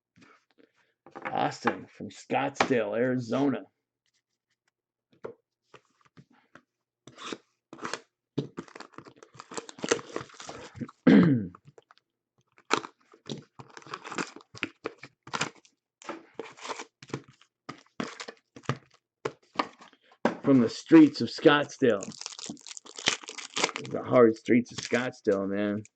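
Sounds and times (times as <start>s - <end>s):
wrappers crinkling and tearing: 8.6s - 10.8s, 13.6s - 15.6s, 21.9s - 24.0s, 24.7s - 25.1s.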